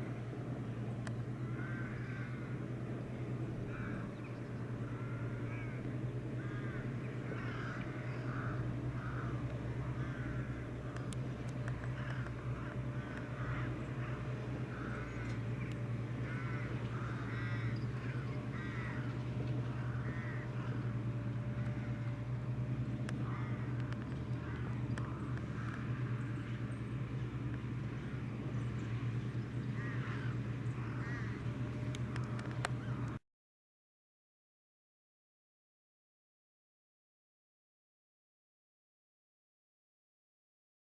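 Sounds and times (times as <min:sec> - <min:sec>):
tractor engine running: 0:00.0 - 0:33.2
crows cawing: 0:01.3 - 0:22.4, 0:23.1 - 0:26.8, 0:29.6 - 0:33.2.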